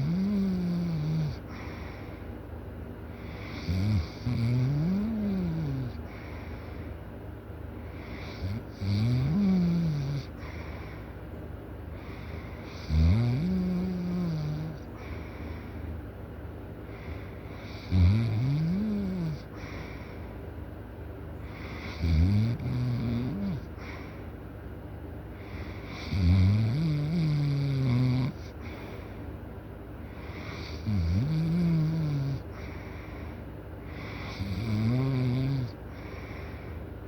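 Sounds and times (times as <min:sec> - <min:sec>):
loud snoring: 0:00.0 - 0:01.4, 0:03.4 - 0:06.0, 0:08.1 - 0:10.4, 0:12.7 - 0:14.8, 0:17.6 - 0:19.5, 0:21.7 - 0:23.7, 0:25.9 - 0:28.5, 0:30.4 - 0:32.5, 0:34.0 - 0:35.8.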